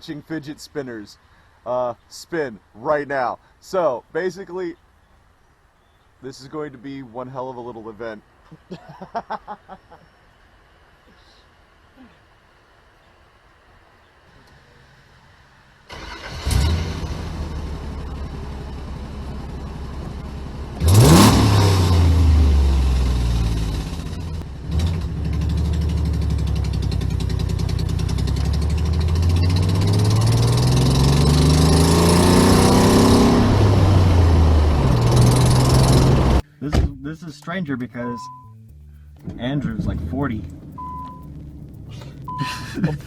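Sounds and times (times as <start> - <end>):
car engine starting and revving: 14.4 - 36.4, 38.1 - 43.0.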